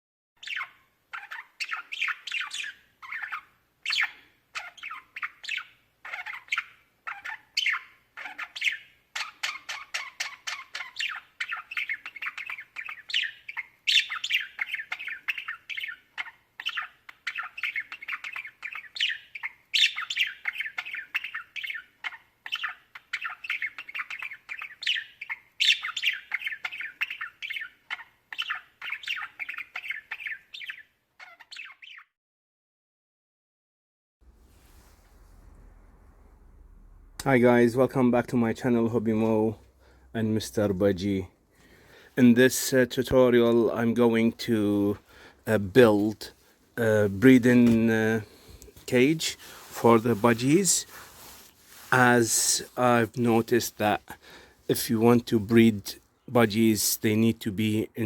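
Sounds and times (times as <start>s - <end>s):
budgerigar squawking calls: 0.4s - 32.1s
budgerigars chirping: 0.4s - 32.1s.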